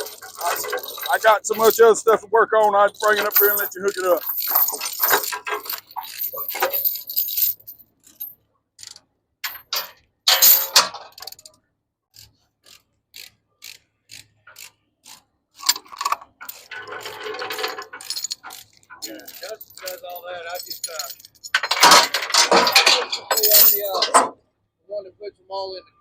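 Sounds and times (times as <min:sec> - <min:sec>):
metal clicks and clinks: 0:00.0 - 0:01.9, 0:03.0 - 0:11.6, 0:14.5 - 0:24.3
metal rattle: 0:00.0 - 0:01.9, 0:02.9 - 0:08.3, 0:09.4 - 0:11.5, 0:15.6 - 0:24.3.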